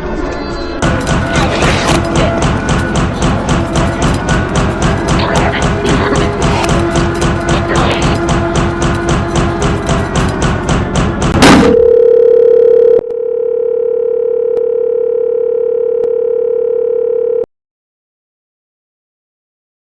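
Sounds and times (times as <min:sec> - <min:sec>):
electronic music: 0:00.7 - 0:11.2
loud burst: 0:00.8 - 0:11.9.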